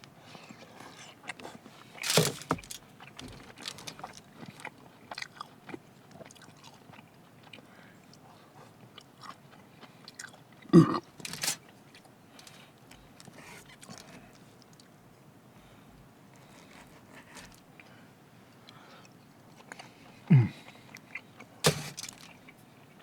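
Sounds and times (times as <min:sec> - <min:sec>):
person chewing food: 0:01.2 - 0:12.7.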